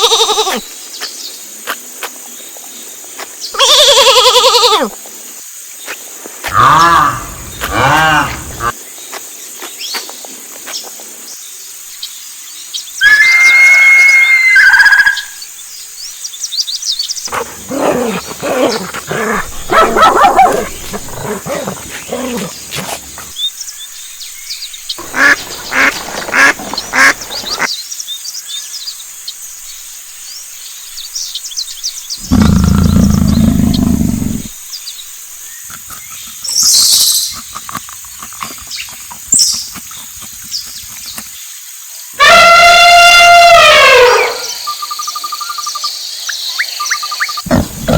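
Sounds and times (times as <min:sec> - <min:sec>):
animal calls and cries: 0:00.0 - 0:00.7, 0:03.5 - 0:05.0, 0:06.5 - 0:08.8, 0:13.0 - 0:15.4, 0:17.3 - 0:23.4, 0:25.0 - 0:27.7, 0:32.2 - 0:34.6, 0:42.2 - 0:47.9.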